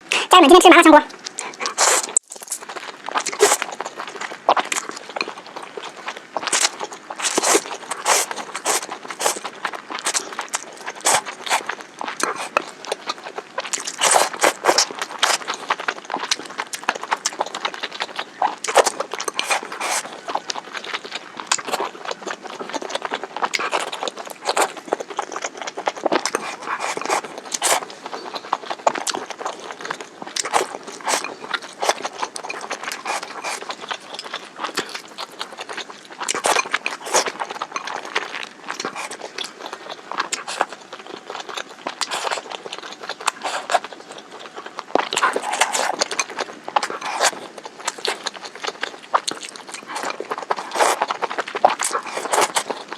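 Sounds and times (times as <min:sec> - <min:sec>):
close chewing with wet smacks: 0:00.0 - 0:52.9
food crunching: 0:00.0 - 0:52.9.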